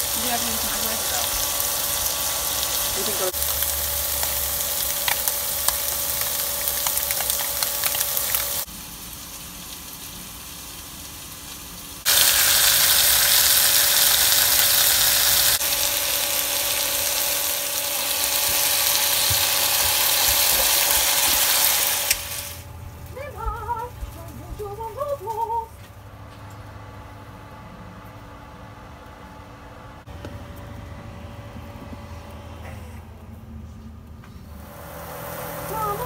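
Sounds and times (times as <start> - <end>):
food sizzling in a frying pan: 0.0 - 22.7
high voice singing: 35.6 - 36.0.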